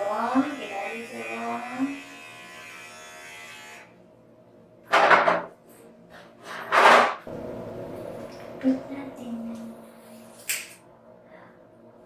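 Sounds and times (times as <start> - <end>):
electric hair clipper buzzing: 0.0 - 4.0.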